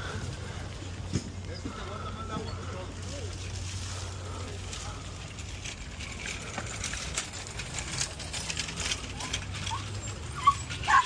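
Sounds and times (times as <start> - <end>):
dog yipping: 9.2 - 11.0.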